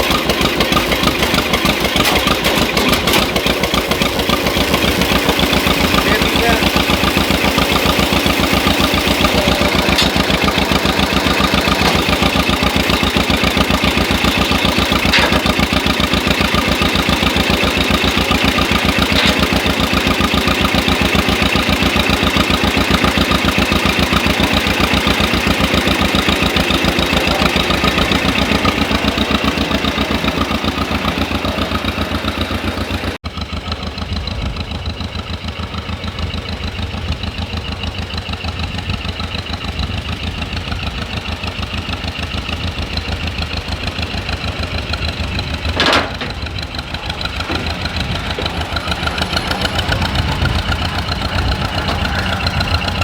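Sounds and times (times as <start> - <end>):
tractor engine idling: 0.0 - 53.0.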